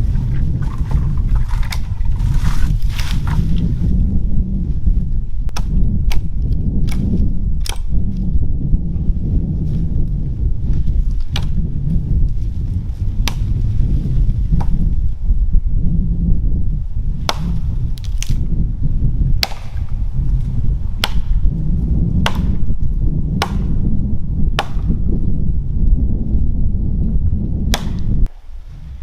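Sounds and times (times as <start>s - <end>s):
low rumble: 0.0s - 29.0s
wood being struck: 5.5s - 7.9s, 11.3s - 11.6s, 13.2s - 13.5s, 17.2s - 18.4s, 19.4s - 19.9s, 21.0s - 21.4s, 22.2s - 22.7s, 23.4s - 23.9s, 24.5s - 25.1s, 27.7s - 28.4s.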